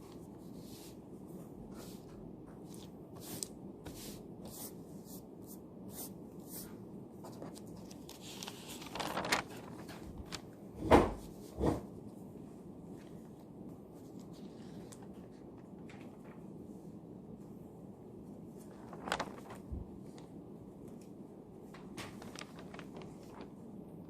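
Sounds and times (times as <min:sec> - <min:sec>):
room hum: 0:00.0 - 0:24.0
paper rustle: 0:06.0 - 0:11.5, 0:13.0 - 0:16.7, 0:18.5 - 0:24.0.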